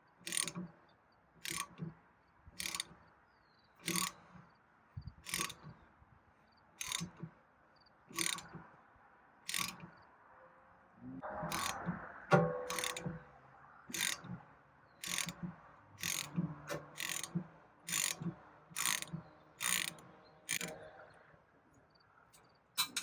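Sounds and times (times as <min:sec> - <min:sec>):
ratchet wrench clicking: 0:00.2 - 0:00.7, 0:01.4 - 0:01.8, 0:02.6 - 0:03.0, 0:03.8 - 0:04.2, 0:05.2 - 0:05.6, 0:06.8 - 0:07.2, 0:08.1 - 0:08.5, 0:09.5 - 0:09.9, 0:11.5 - 0:11.9, 0:12.6 - 0:13.2, 0:13.9 - 0:14.3, 0:15.0 - 0:15.4, 0:16.0 - 0:20.8.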